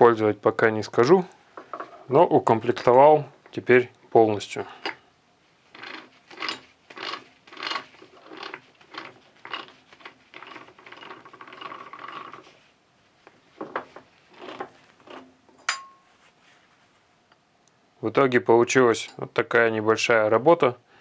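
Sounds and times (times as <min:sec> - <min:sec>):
lathe chuck ratcheting: 0:05.7 - 0:12.4, 0:14.3 - 0:15.3.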